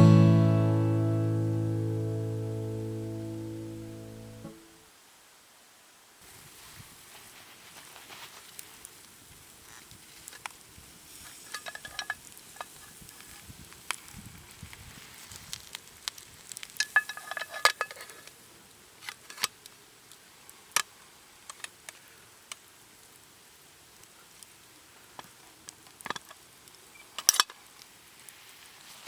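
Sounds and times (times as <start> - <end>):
faint hiss: 0.0 - 29.0.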